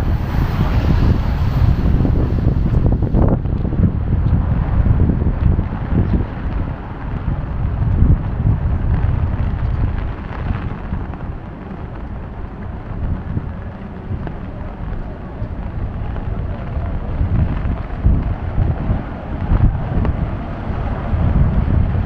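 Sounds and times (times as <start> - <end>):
rain hiss: 0.0 - 3.4
wind buffeting microphone: 0.0 - 22.0.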